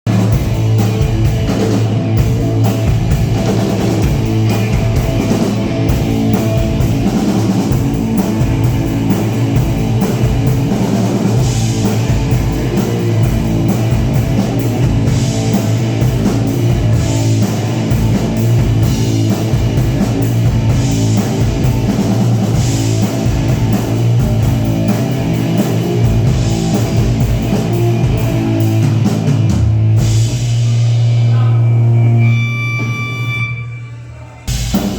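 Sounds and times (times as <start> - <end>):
drum kit: 0.0 - 33.4, 34.5 - 34.9
electric guitar: 0.1 - 33.7.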